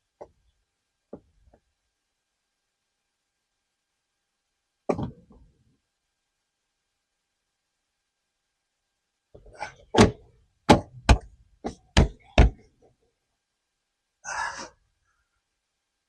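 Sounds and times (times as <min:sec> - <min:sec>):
hand tapping plastic panels: 0:09.4 - 0:12.7.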